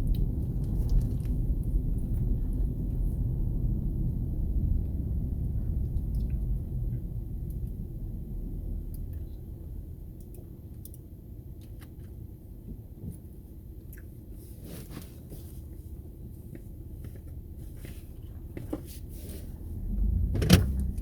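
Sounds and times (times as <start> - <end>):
light clicks and crackles: 0.0 - 3.1, 8.8 - 15.8
vehicle rumble from inside: 0.0 - 21.0.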